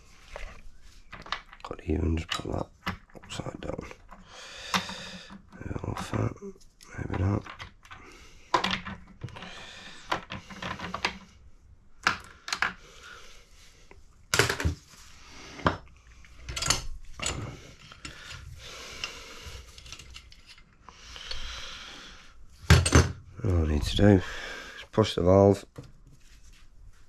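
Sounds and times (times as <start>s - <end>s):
metal tool parts clinking: 16.4s - 18.4s.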